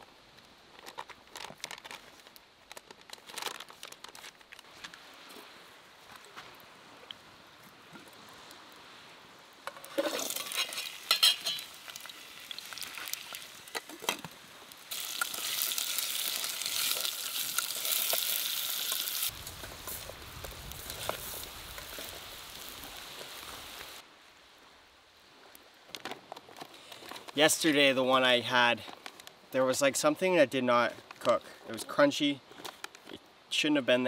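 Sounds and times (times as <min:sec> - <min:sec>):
food sizzling on hot rock: 0:09.6 - 0:24.0
scraping and clinking: 0:09.8 - 0:11.7.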